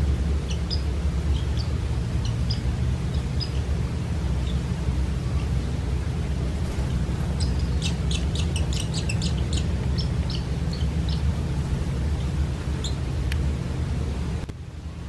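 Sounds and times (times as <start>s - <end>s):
steady low rumble: 0.0s - 15.0s
bird nestlings chirping: 0.4s - 4.7s, 6.2s - 13.6s.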